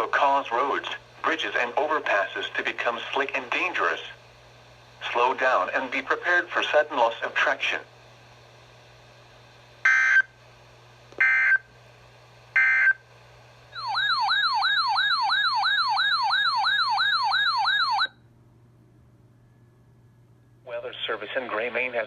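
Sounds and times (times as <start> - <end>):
warbling siren-like alert tone: 13.8 - 18.2.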